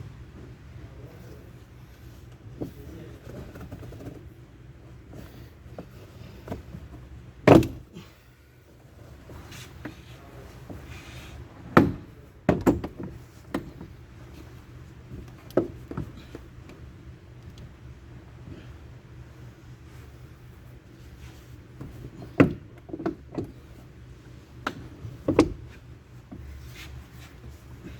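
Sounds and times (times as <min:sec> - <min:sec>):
low steady hum: 0:00.0 - 0:27.9.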